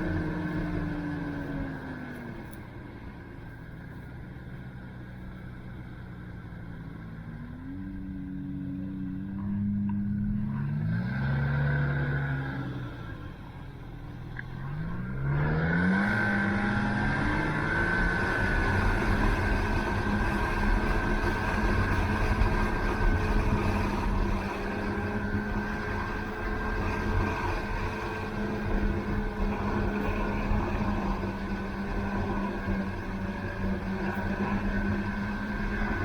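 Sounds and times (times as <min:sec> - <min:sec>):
snowmobile engine revving: 0:14.6 - 0:36.0.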